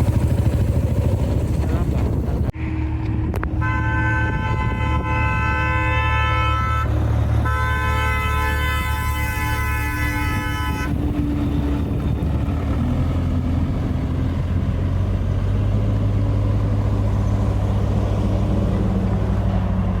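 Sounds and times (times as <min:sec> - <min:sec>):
diesel engine running: 0:00.0 - 0:20.0
vehicle horn: 0:03.6 - 0:11.2.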